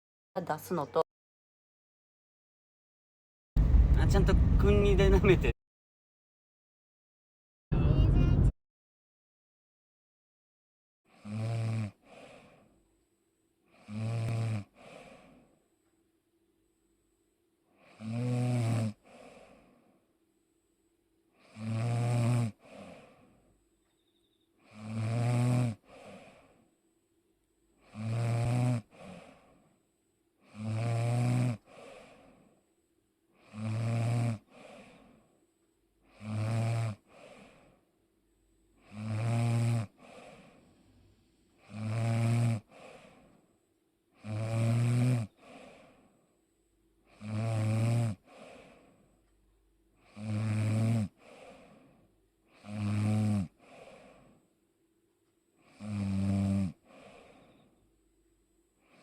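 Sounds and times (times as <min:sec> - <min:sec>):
person snoring: 0:11.1 - 0:12.7, 0:13.7 - 0:15.4, 0:17.8 - 0:19.7, 0:21.4 - 0:23.3, 0:24.6 - 0:26.6, 0:27.8 - 0:29.6, 0:30.4 - 0:32.4, 0:33.4 - 0:35.2, 0:36.0 - 0:37.8, 0:38.8 - 0:40.7, 0:41.6 - 0:43.4, 0:44.2 - 0:46.1, 0:47.1 - 0:48.9, 0:50.0 - 0:54.4, 0:55.6 - 0:57.6.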